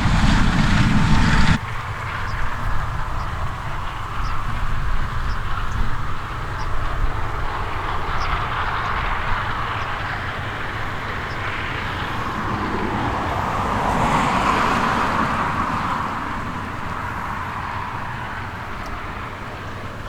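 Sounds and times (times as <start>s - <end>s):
heavy farm machinery drone: 0.0s - 1.6s.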